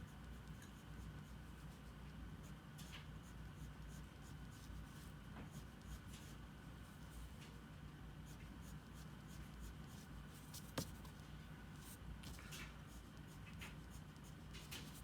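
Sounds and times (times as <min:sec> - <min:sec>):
pencil scratching on paper: 0:08.3 - 0:11.1.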